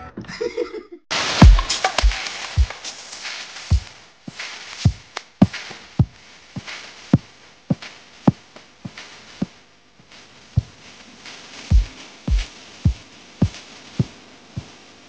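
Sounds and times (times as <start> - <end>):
kick drum beat: 1.4 - 2.8, 4.8 - 6.2, 10.6 - 10.8, 11.7 - 14.1.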